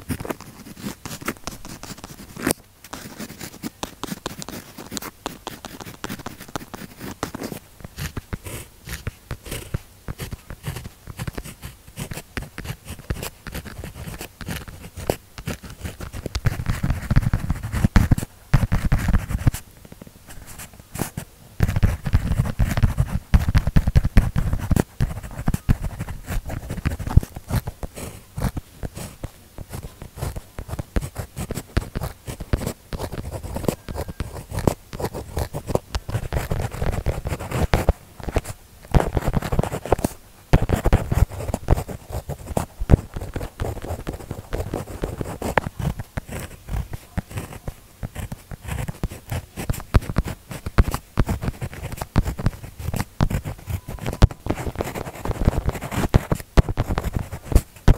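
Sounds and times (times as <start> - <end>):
pen scratching on paper: 0.1 - 19.6, 20.3 - 57.9.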